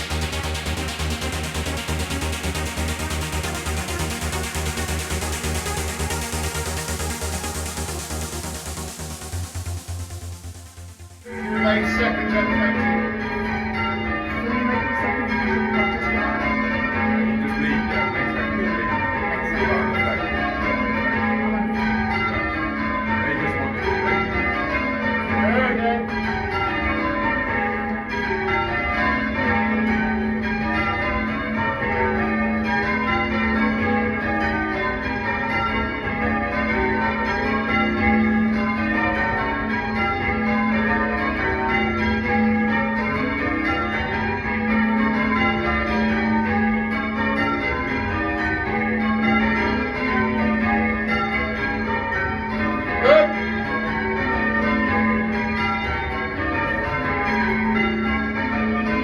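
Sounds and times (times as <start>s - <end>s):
church bells ringing: 0.0s - 59.0s.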